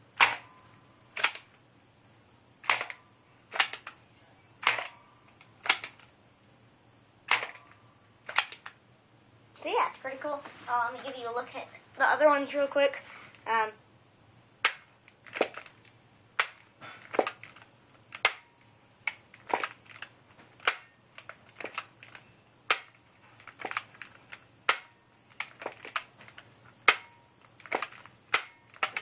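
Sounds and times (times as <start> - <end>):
plastic toy blaster clicks: 1.2 - 1.5, 2.6 - 4.0, 4.6 - 4.9, 5.6 - 6.0, 7.3 - 7.6, 8.3 - 8.7, 19.1 - 29.0.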